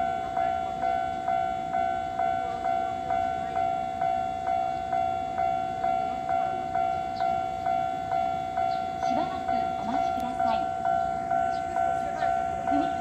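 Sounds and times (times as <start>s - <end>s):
level crossing alarm bell: 0.0s - 13.0s.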